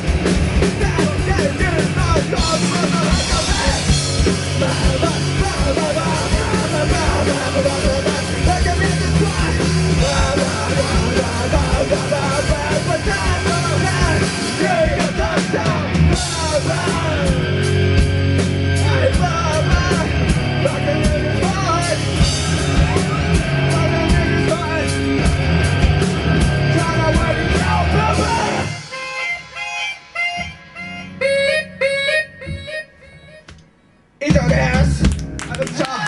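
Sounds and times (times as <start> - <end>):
distorted punk rock band: 0.0 - 31.2
shouted vocals: 22.5 - 24.6.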